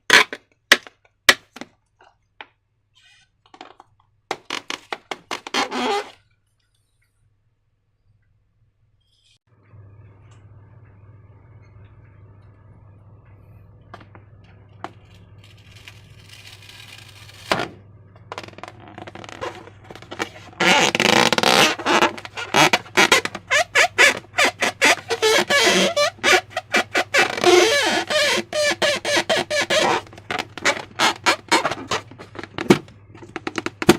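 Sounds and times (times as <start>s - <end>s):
steady low hum: 7.0s - 33.9s.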